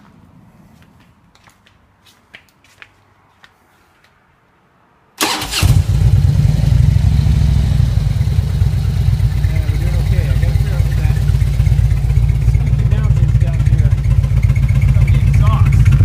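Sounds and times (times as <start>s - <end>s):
motorcycle engine starting and idling: 5.2s - 16.0s.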